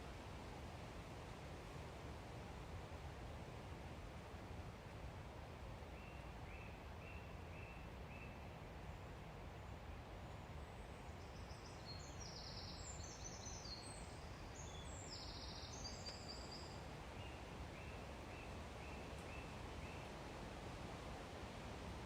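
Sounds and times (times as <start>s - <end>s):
outdoor background hiss: 0.0s - 22.0s
songbird singing: 6.0s - 9.0s, 9.6s - 20.1s.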